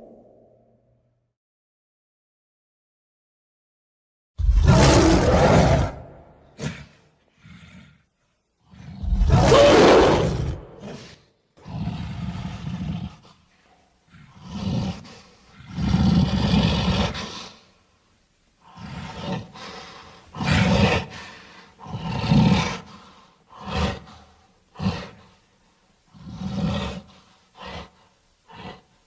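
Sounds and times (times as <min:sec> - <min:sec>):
gorilla roaring: 0:04.4 - 0:08.0, 0:08.7 - 0:13.3, 0:14.1 - 0:17.6, 0:18.6 - 0:25.3, 0:26.1 - 0:28.9.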